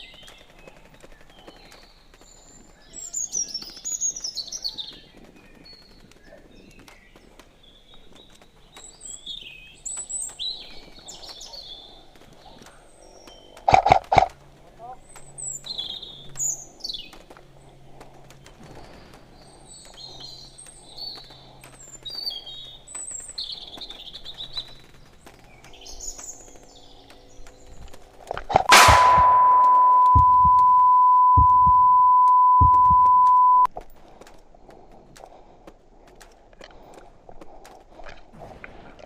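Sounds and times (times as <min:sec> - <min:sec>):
small birds chirping: 0:00.0 - 0:33.7
loud bang: 0:28.5 - 0:33.7
steady electronic beep: 0:28.6 - 0:33.7.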